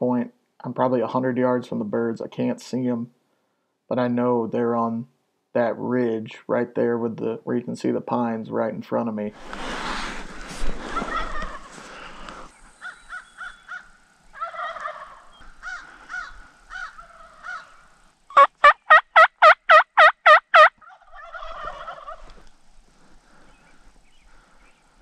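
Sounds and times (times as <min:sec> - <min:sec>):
distant turkeys gobbling: 0:10.9 - 0:12.1, 0:12.8 - 0:22.4
turkey call yelps: 0:11.0 - 0:11.7, 0:12.8 - 0:22.4.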